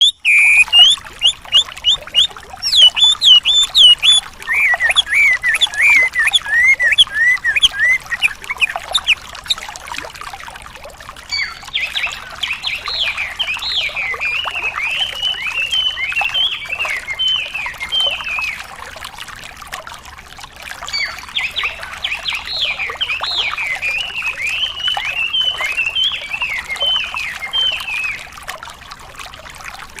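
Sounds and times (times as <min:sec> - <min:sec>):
bird song with sharp chirps: 0:00.0 - 0:09.6, 0:11.3 - 0:18.6, 0:20.9 - 0:28.2
trickle of running water: 0:00.0 - 0:30.0.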